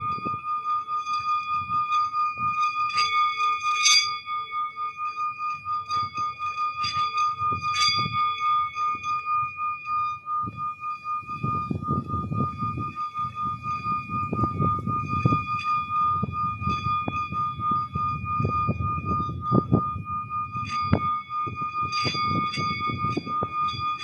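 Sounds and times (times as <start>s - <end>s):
singing bowl ringing: 0.0s - 24.0s.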